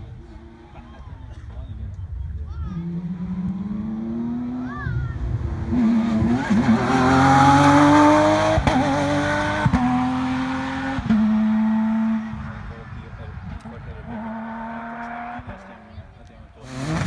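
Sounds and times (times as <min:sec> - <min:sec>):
rally car engine at high revs: 0:02.8 - 0:16.0, 0:16.6 - 0:17.0.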